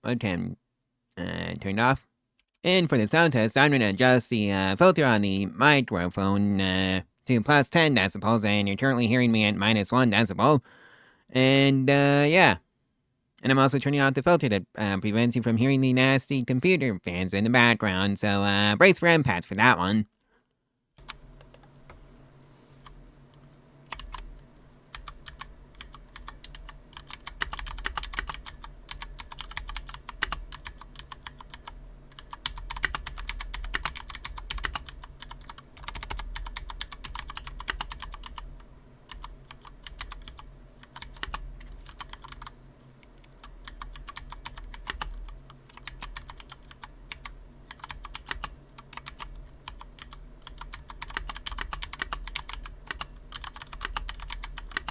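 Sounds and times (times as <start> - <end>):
mechanical keyboard typing: 21.0 - 22.0, 23.9 - 54.9
computer fans humming: 21.0 - 54.9.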